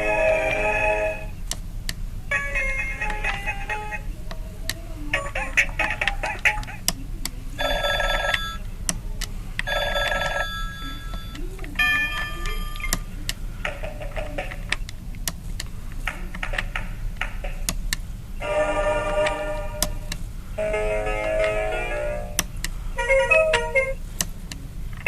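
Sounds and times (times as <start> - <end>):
desk phone ringtones: 7.6 - 8.7, 9.6 - 13.1.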